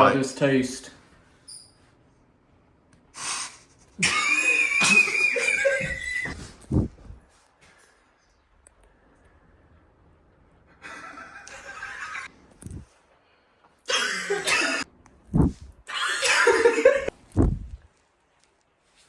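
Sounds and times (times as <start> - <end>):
person laughing: 4.0 - 6.4, 10.8 - 12.3, 15.9 - 17.1
short low thump: 15.4 - 15.7, 17.4 - 17.8.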